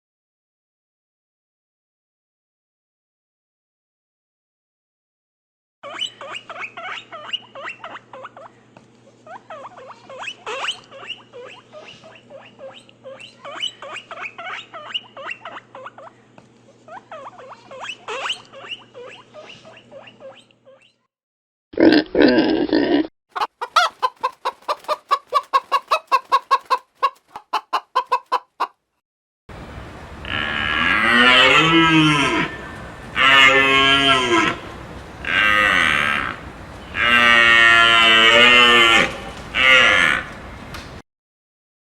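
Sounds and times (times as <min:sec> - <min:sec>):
rapid clucks: 0:23.3 - 0:28.8
cow mooing: 0:30.2 - 0:40.4
loud animal call: 0:30.2 - 0:40.4.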